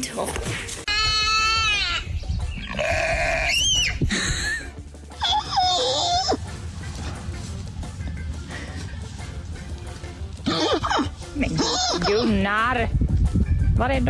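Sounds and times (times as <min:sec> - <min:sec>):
goat bleating: 0:10.4 - 0:12.4.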